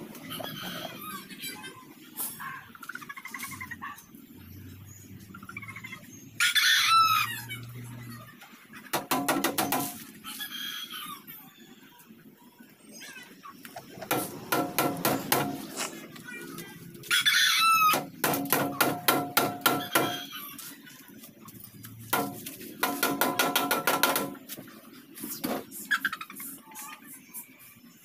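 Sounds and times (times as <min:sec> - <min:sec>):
rooster crowing: 0:06.4 - 0:07.5, 0:17.1 - 0:18.0.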